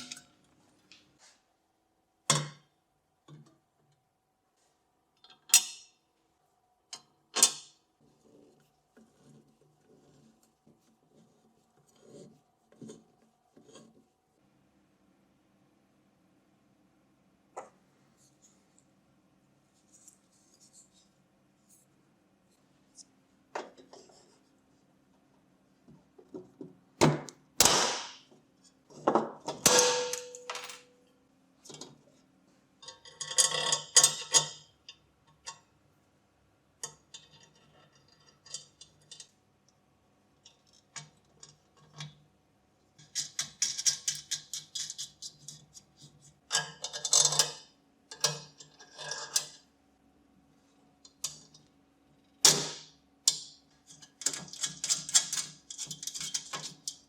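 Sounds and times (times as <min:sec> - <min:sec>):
metallic ring: 0:29.7 - 0:31.0
small metal parts clicking and rattling: 0:32.8 - 0:35.6, 0:43.0 - 0:45.7, 0:53.3 - 0:57.0.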